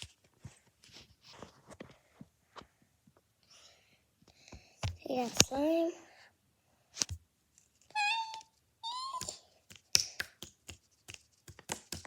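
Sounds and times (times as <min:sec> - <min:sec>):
high-pitched meow-like cries: 0:07.9 - 0:09.4.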